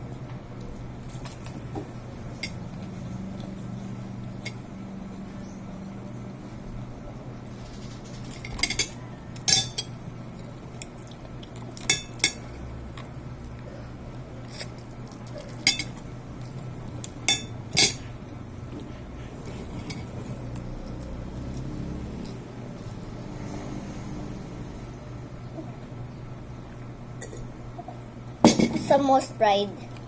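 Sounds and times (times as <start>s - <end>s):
steady low hum: 0.0s - 30.0s
cutlery clinking on plate: 8.4s - 9.9s, 15.6s - 16.0s.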